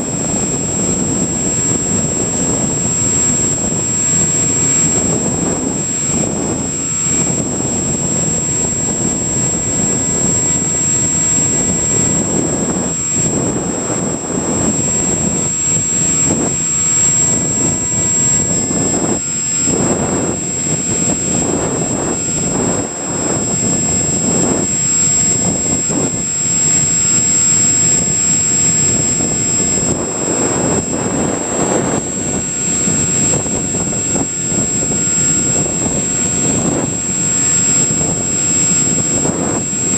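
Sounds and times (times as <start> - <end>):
thin high whine: 0.0 - 39.9
wind and propeller noise: 0.0 - 39.9.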